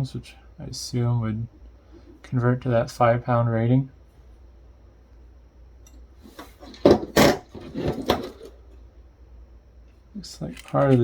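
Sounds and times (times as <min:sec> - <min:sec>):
parts knocking and clattering: 0:05.9 - 0:08.8
parts scraping: 0:05.9 - 0:08.8, 0:10.4 - 0:11.0.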